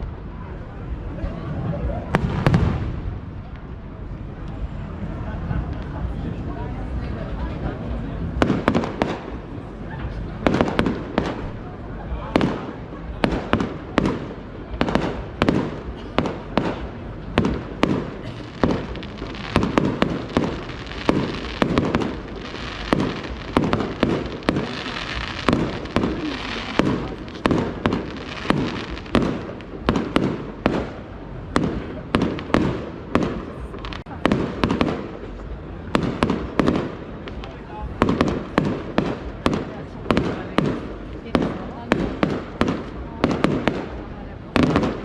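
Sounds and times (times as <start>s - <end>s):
crackling hiss of fireworks: 0.0s - 45.0s
fireworks bursting with rumble: 0.0s - 45.0s.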